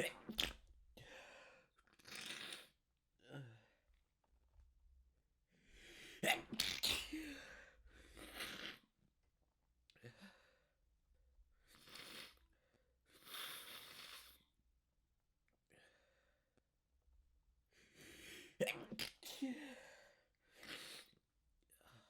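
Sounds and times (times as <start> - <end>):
person sneezing: 0.0 - 0.5, 6.2 - 7.5.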